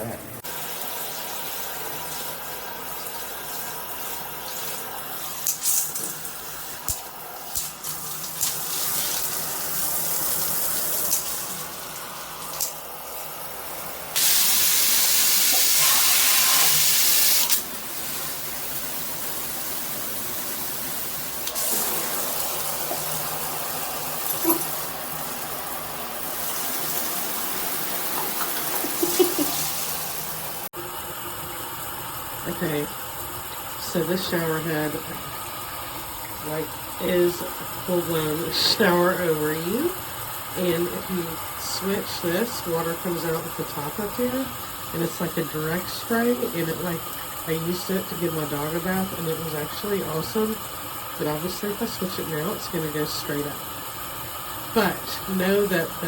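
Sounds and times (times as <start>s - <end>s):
shower head spraying water: 0.4s - 56.0s.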